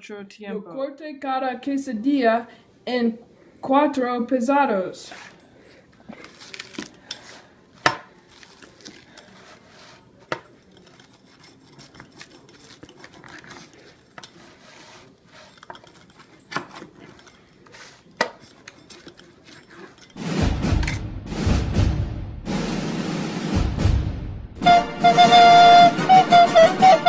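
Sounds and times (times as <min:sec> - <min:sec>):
utensils clinking against dishes: 0:05.1 - 0:20.2
music: 0:20.2 - 0:27.0.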